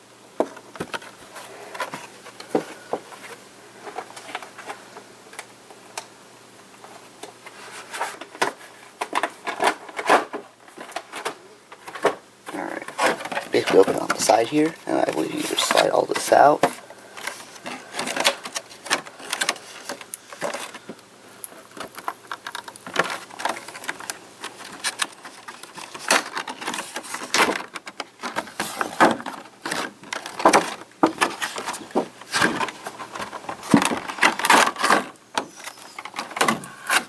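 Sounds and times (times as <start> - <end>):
plastic parts scraping and clicking: 0.4 - 6.1, 6.8 - 37.0
packaging rustling: 7.5 - 37.0.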